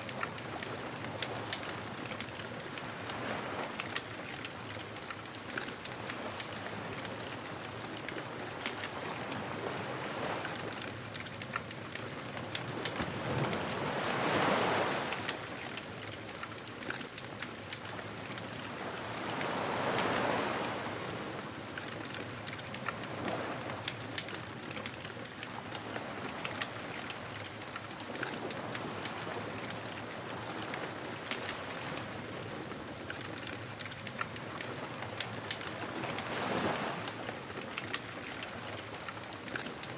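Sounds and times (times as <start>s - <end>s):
surf waves washing: 6.0s - 24.6s, 34.2s - 39.9s.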